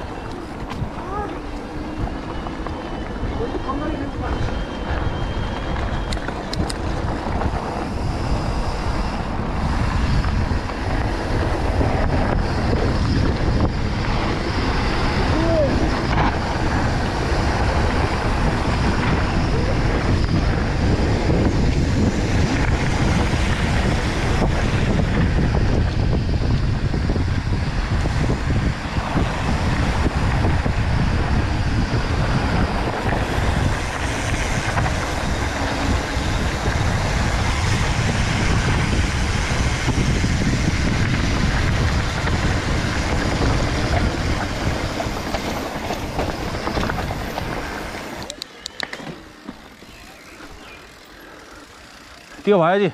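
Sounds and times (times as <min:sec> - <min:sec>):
mountain bike rattling: 0:00.0 - 0:52.9.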